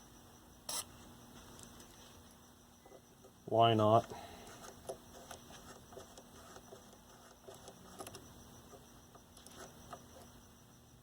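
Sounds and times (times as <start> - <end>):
faint clicks and scrapes: 4.4 - 10.4.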